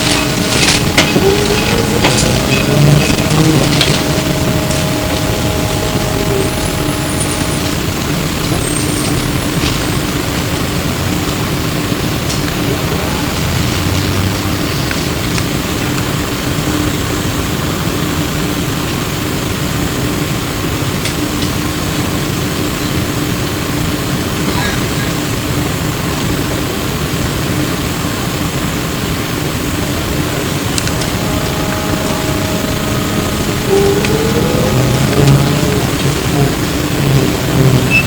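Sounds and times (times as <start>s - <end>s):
constant hum: 0.0s - 16.6s, 30.0s - 38.0s
high-pitched whine: 0.0s - 17.0s, 30.2s - 38.0s
trolleybus running and road noise: 0.0s - 38.0s.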